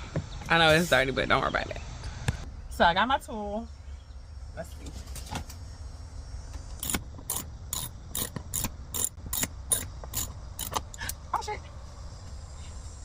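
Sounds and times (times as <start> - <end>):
ratchet wrench clicking: 6.8 - 11.2.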